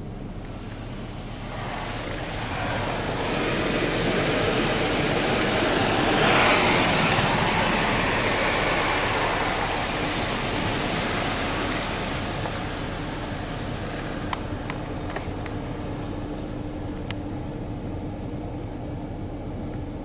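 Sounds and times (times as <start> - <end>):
water spray hissing on truck: 0.0 - 15.9
steady hum: 0.0 - 20.0.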